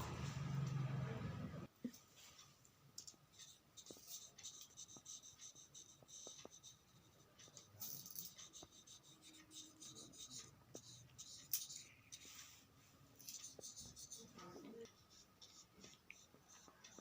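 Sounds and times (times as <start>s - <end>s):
paintbrush scratching on cardboard: 3.4s - 12.6s, 13.3s - 17.0s.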